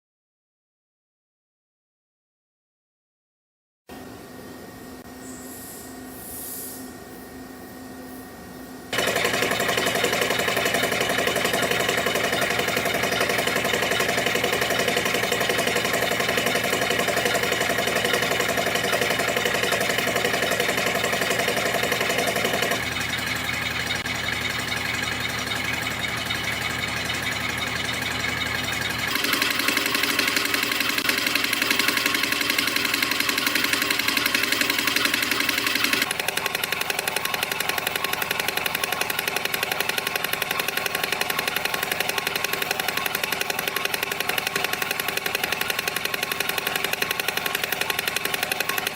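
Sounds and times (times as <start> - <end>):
low machine hum: 3.9 - 36.1
spring coiling machine chatter: 8.9 - 48.9.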